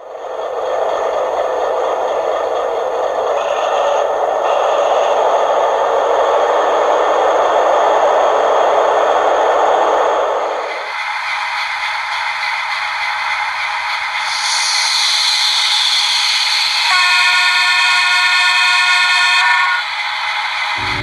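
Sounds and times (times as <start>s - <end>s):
diesel generator running: 20.8s - 21.0s.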